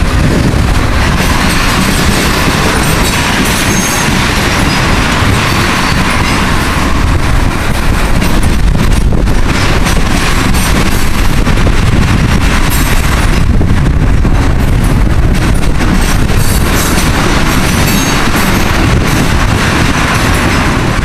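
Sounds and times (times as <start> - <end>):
freight train rumbling past: 0.0 - 21.0
train wheels clattering: 0.0 - 21.0.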